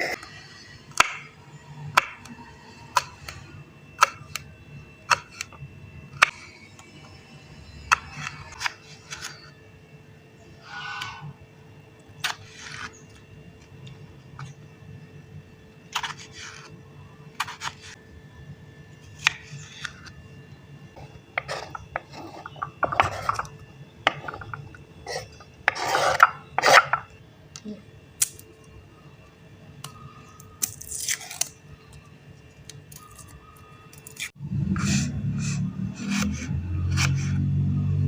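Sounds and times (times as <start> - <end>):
steady low hum: 0.0 - 38.0
utensils scraping and knocking: 21.0 - 27.1.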